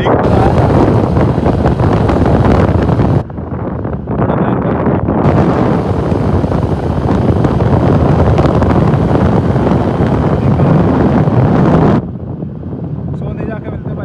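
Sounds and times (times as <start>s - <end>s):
wind buffeting microphone: 0.0s - 14.0s
vehicle noise: 0.2s - 3.2s, 5.2s - 11.7s.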